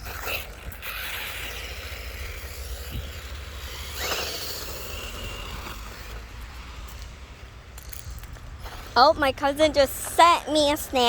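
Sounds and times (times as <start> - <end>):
toy car electric motor whirring: 0.0 - 9.0.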